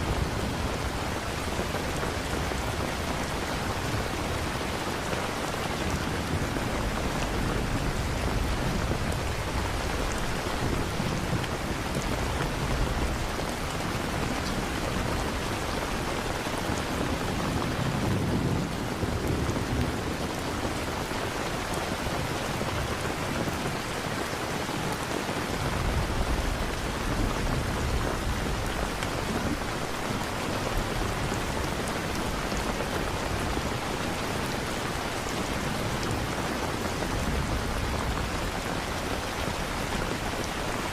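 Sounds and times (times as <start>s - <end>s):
thunder rumbling: 0.0s - 23.8s
heavy rain: 0.0s - 40.9s.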